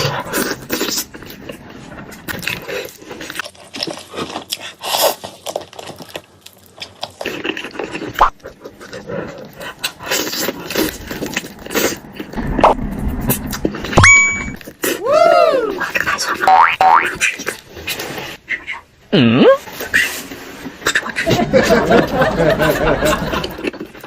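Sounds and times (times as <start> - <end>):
chewing: 0.0 - 12.6
slurping: 0.0 - 13.9
small clicks and crunches: 0.7 - 12.9.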